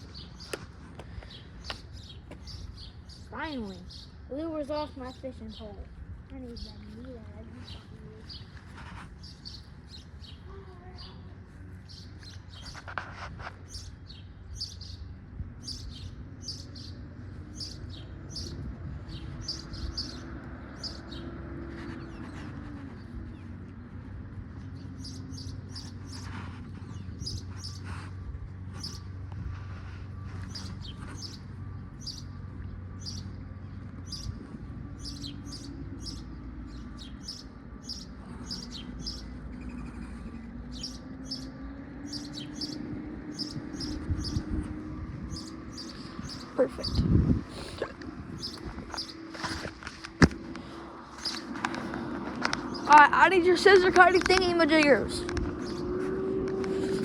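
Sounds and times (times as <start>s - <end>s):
steady low rumble: 0.0s - 12.8s, 42.1s - 57.0s
small birds chirping: 0.0s - 57.0s.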